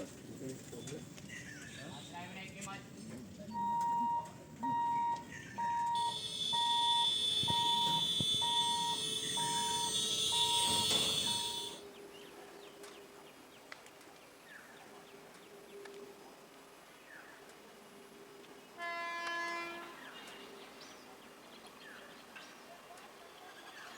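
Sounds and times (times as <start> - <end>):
electronic warning beeps: 3.5 - 11.8
faint chirps: 3.5 - 12.3
faint hum: 3.5 - 12.7
shrill continuous ringing: 3.6 - 12.0.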